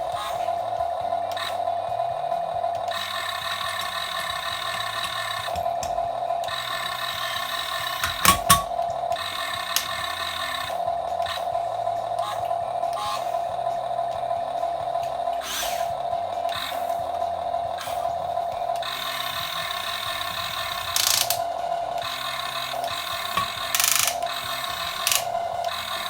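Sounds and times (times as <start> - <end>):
electronic engine sound: 0.0 - 26.0
small electric motors whining: 0.0 - 26.0
sharp clicks: 2.8 - 13.3, 17.8 - 26.0.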